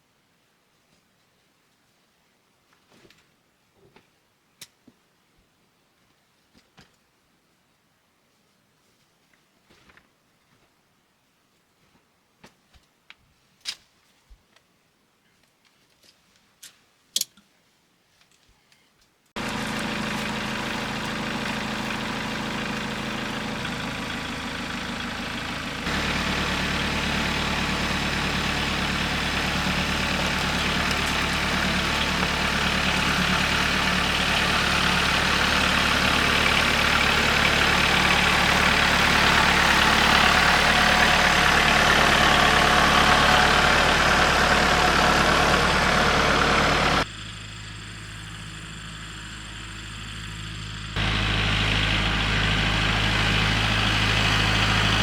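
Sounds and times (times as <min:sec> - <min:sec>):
engine running steadily: 0:19.4 - 0:55.0.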